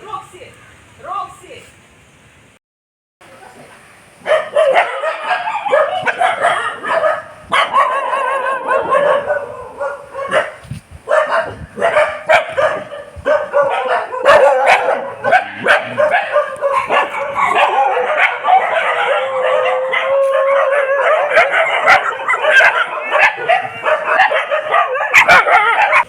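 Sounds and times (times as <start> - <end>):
dogs barking and yelping: 4.2 - 26.0
dog howling: 4.6 - 10.4, 11.2 - 26.0.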